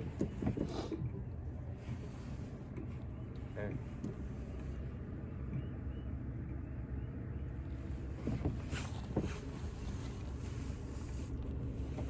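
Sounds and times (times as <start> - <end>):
boat motor humming: 0.0 - 12.0
brief knocks and rustles: 8.2 - 10.4.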